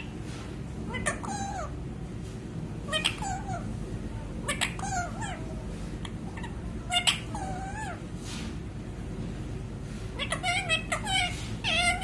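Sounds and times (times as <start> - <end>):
parrot making pitched calls: 0.9 - 1.8, 2.9 - 3.7, 4.4 - 5.6, 6.2 - 8.0, 10.2 - 12.0.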